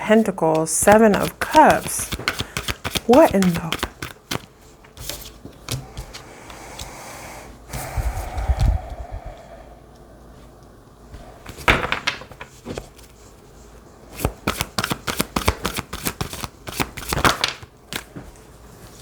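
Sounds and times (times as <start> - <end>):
cards being shuffled: 0.2 - 6.3, 14.2 - 18.2.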